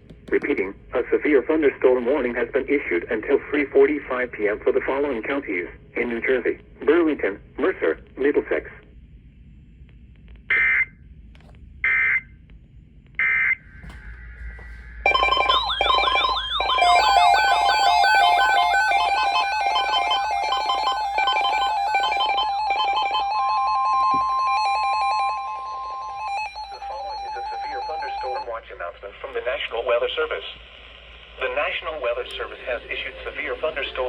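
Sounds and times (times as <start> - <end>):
digital data tone bursts: 15.1 - 24.1
synthesized electronic music: 15.1 - 28.4.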